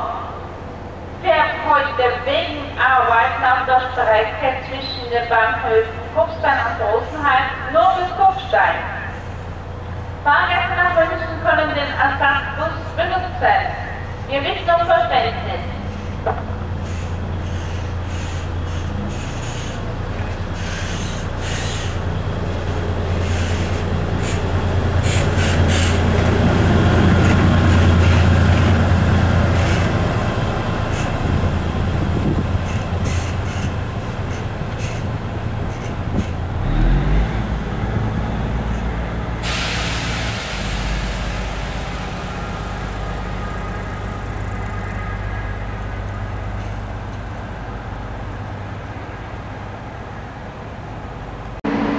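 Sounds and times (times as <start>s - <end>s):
train low hum: 0.0s - 51.9s
train wheel clicks and clanks: 32.2s - 36.5s.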